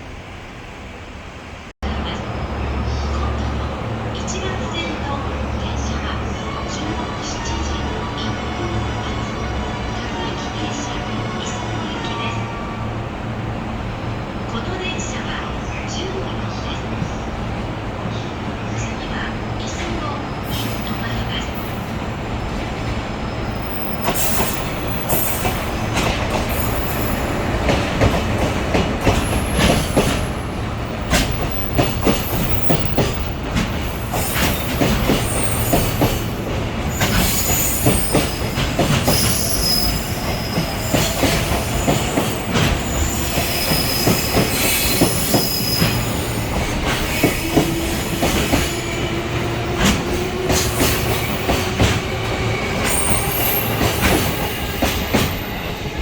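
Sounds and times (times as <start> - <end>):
train wheels squealing: 20.4 - 22.2, 23.3 - 28.1, 29.0 - 56.0
wheels clacking over rail joints: 23.9 - 55.4.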